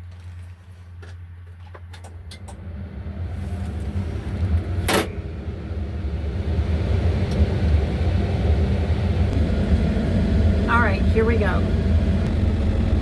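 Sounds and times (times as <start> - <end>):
excavator diesel engine humming: 1.2 - 13.0.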